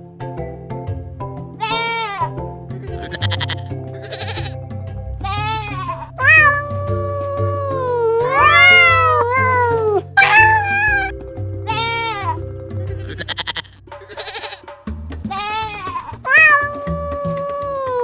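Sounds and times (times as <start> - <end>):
soft background music: 0.0 - 13.6
animal calls: 2.9 - 4.6, 5.2 - 6.9, 8.1 - 11.1, 11.7 - 14.7, 15.3 - 16.9.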